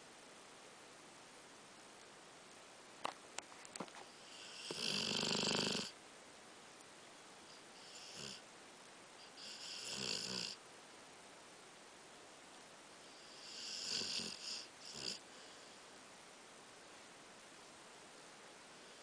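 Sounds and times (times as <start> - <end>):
dog snoring: 4.0 - 6.0, 7.5 - 8.4, 9.2 - 10.6, 13.0 - 15.8.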